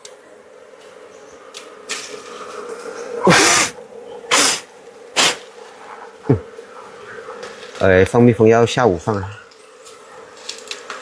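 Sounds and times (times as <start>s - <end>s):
bees humming: 0.3s - 7.4s
sharp puffs of breath: 3.3s - 5.4s.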